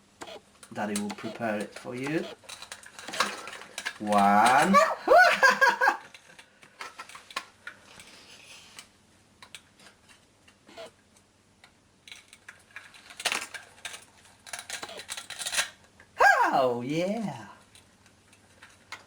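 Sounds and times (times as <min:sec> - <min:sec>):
toy pieces clicking and tapping: 0:01.0 - 0:04.8.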